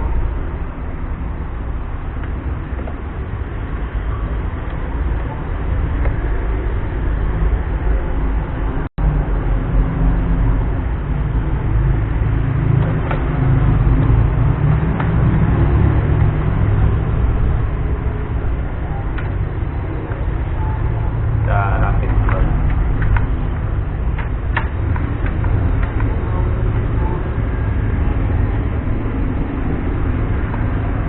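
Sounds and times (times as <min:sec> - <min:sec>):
low rumbling background noise: 0:00.0 - 0:31.0.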